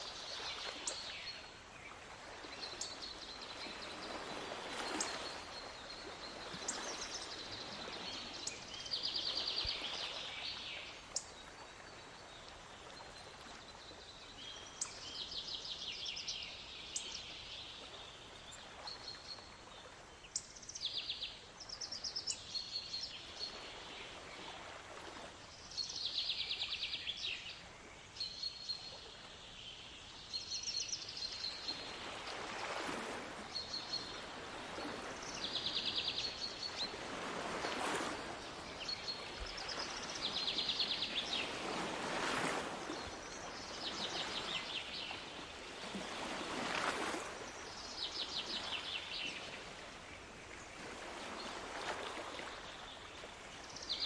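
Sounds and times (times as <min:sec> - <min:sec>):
waves washing: 0:31.7 - 0:50.0.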